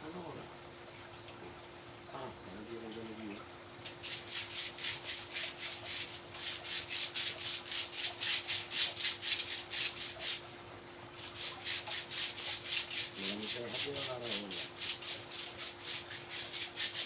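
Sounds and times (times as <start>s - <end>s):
rhythmic massage rubbing strokes: 3.8s - 10.5s, 11.2s - 17.0s.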